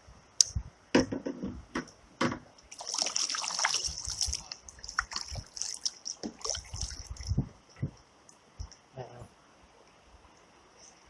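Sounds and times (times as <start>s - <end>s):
water sloshing and trickling: 2.6s - 8.7s.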